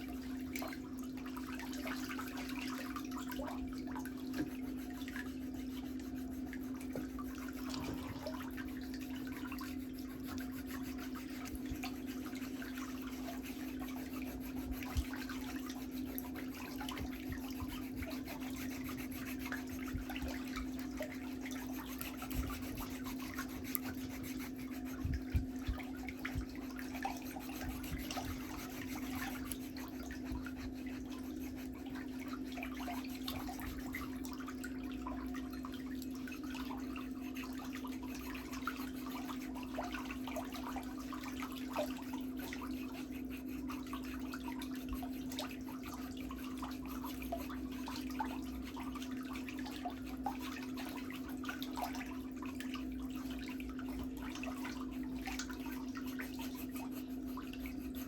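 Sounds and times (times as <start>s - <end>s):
steady low hum: 0.0s - 58.0s
pedicure tools scratching: 4.3s - 34.0s.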